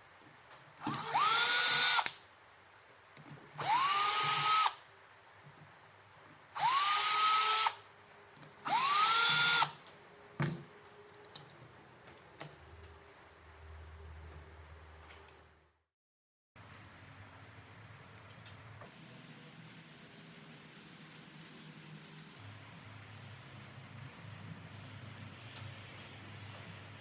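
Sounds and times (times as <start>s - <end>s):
electric drill motor whining: 0.8s - 2.1s, 3.6s - 4.8s, 6.6s - 7.8s, 8.7s - 9.8s.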